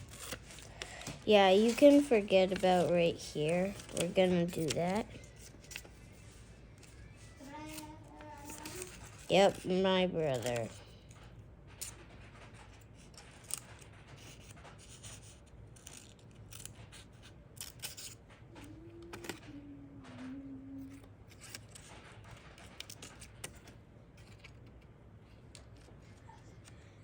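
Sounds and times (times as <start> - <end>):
scissors snipping paper: 0.0 - 6.0, 6.8 - 11.1, 12.6 - 19.4, 20.3 - 24.7.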